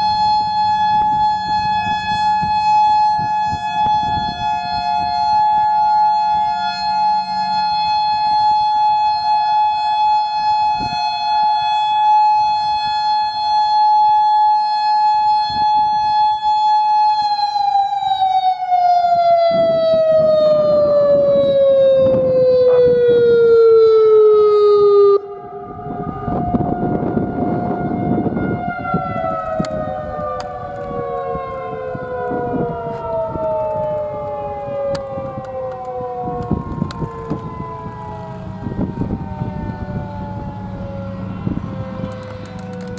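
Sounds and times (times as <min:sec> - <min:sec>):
distant sirens winding down: 0:00.0 - 0:42.9
outdoor warning sirens wailing: 0:00.0 - 0:42.9.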